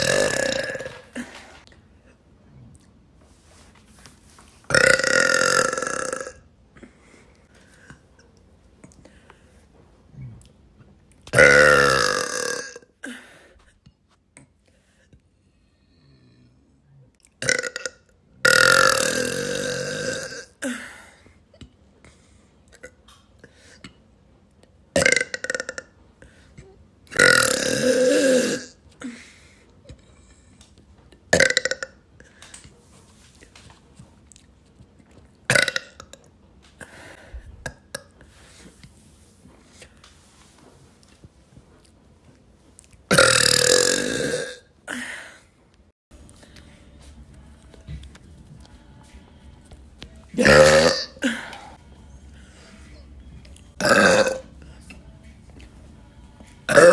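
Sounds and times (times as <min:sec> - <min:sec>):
woman burping: 0:00.0 - 0:01.6, 0:04.7 - 0:06.4, 0:11.3 - 0:13.3, 0:17.4 - 0:20.9, 0:25.0 - 0:25.9, 0:27.1 - 0:29.2, 0:31.3 - 0:32.0, 0:35.5 - 0:36.2, 0:43.1 - 0:45.2, 0:50.3 - 0:51.8, 0:53.8 - 0:54.5, 0:56.7 - 0:56.9.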